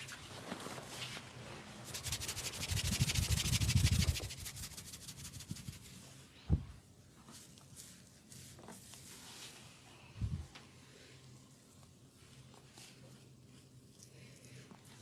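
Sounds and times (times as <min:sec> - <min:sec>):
hands rubbing over skin: 0:01.9 - 0:06.0.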